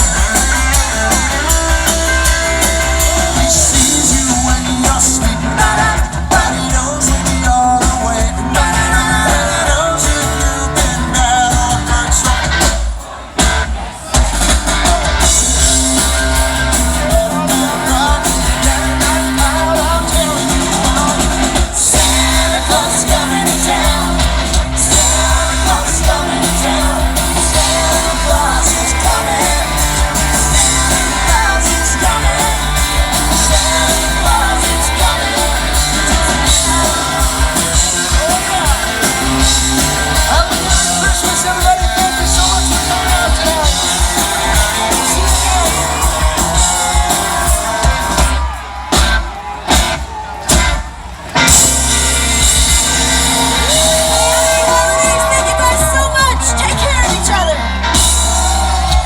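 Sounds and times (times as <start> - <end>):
person singing: 0.0 - 12.8, 14.4 - 48.3
live rock band playing: 0.0 - 59.0.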